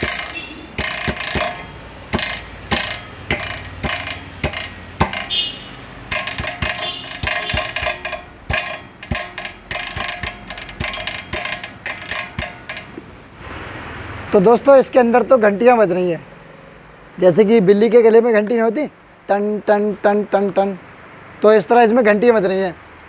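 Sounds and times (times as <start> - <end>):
metallic ringing inside tank: 0.0 - 13.0.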